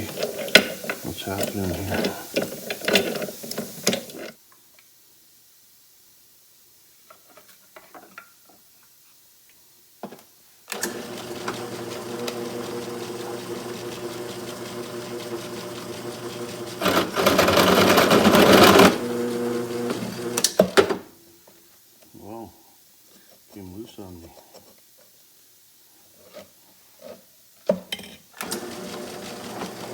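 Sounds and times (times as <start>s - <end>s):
drill press motor humming: 10.7s - 20.5s, 28.4s - 29.9s.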